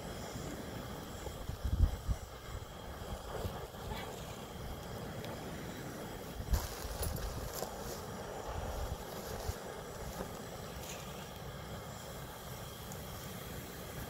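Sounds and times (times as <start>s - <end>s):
wind buffeting microphone: 0.0s - 10.6s.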